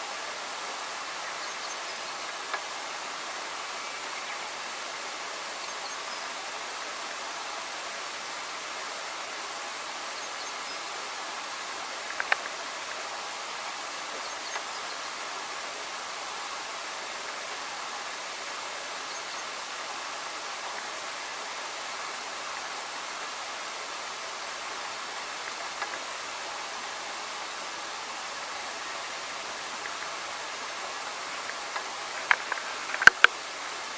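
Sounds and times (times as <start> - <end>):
sharp click: 32.2 - 33.3.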